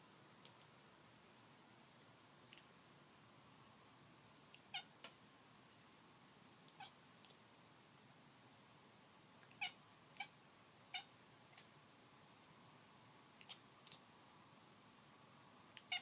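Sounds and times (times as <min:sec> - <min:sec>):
kitten squeaky calls: 0:15.8 - 0:16.0.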